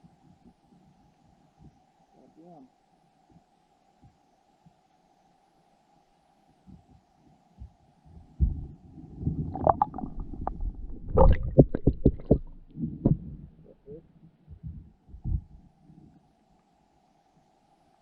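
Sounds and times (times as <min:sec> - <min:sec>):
low thumps and knocks: 0:07.6 - 0:13.7, 0:14.5 - 0:15.6
low rumble: 0:08.4 - 0:15.6.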